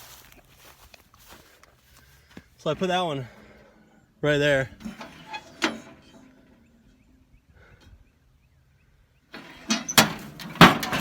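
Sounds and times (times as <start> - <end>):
metal grill knocking and rattling: 4.8 - 6.6, 9.4 - 11.0.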